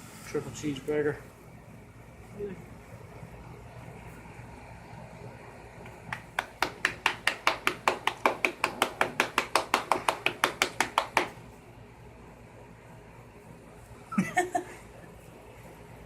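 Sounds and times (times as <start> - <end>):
fast sharp taps: 5.9 - 11.4.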